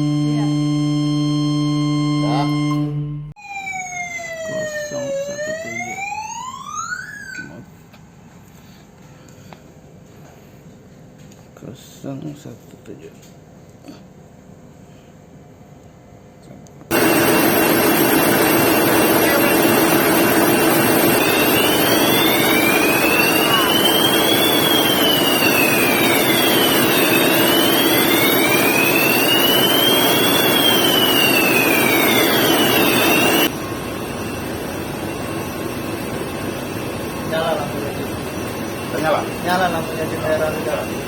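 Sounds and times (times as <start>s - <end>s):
loud harsh alarm ringing: 0.0s - 7.3s, 16.9s - 41.0s
wailing alarm tone: 0.0s - 7.6s, 16.9s - 41.0s.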